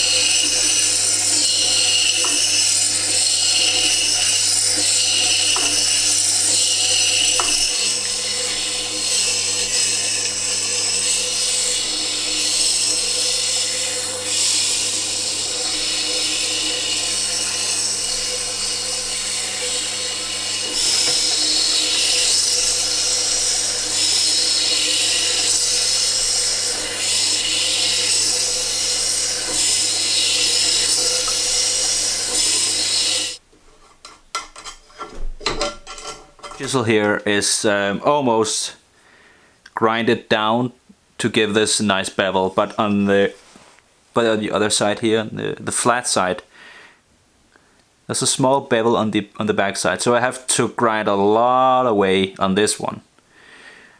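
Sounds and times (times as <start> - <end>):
low motor hum: 0.0 - 33.4
chisel scraping on sharpening wheel: 0.0 - 36.8.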